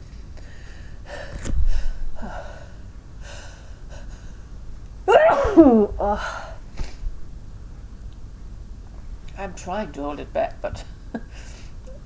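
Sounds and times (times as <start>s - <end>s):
gasping breaths: 0.4s - 4.6s
person sneezing: 5.1s - 7.0s.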